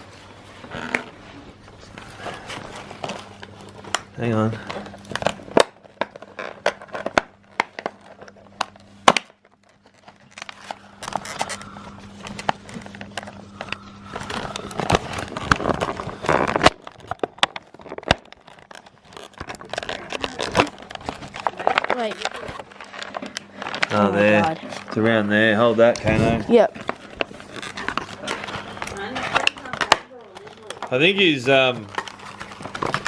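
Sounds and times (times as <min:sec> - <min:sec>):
crinkling plastic: 0:00.0 - 0:33.0
scissors snipping packaging: 0:04.6 - 0:23.9, 0:26.8 - 0:31.0.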